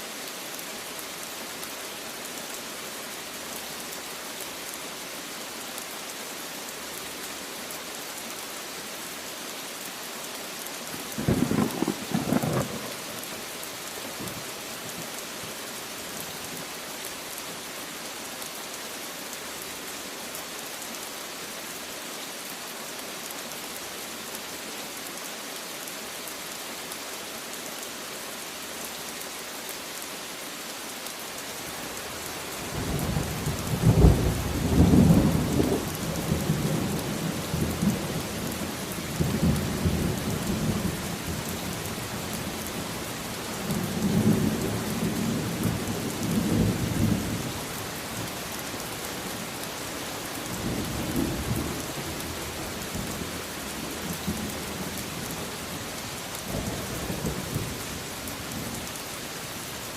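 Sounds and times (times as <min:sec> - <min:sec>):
steady rain hiss: 0:00.0 - 0:59.9
thunder rumbling: 0:11.2 - 0:13.1.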